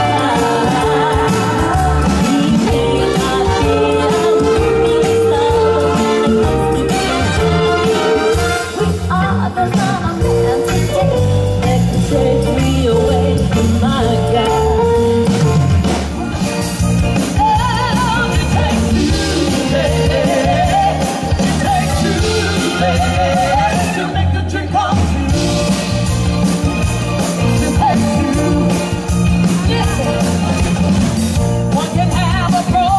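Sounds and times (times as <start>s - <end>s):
person singing with vibrato: 0.0s - 15.1s, 17.3s - 25.7s
live soul band playing: 0.0s - 32.9s.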